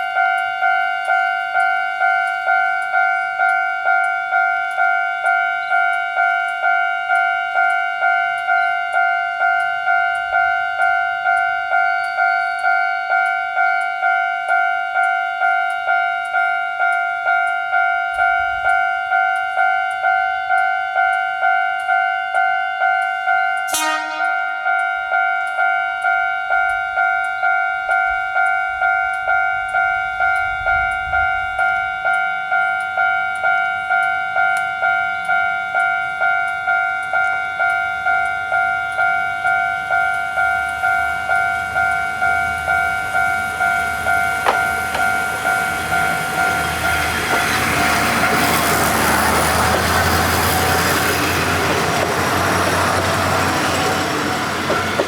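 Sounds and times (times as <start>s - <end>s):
railroad crossing electronic bell: 0.0s - 55.0s.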